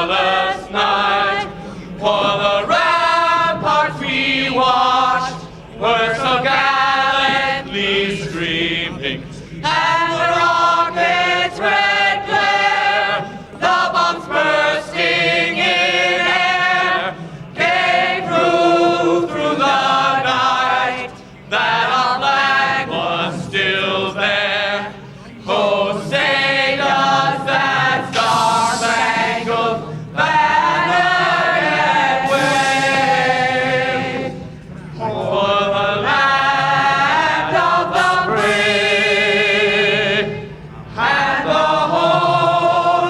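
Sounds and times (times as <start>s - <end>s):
voices singing together: 0.0s - 43.0s.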